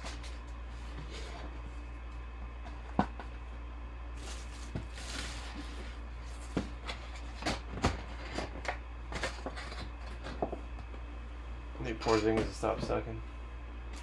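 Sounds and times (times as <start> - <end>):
steady low hum: 0.0 - 14.0
card packs rustling: 4.1 - 10.6.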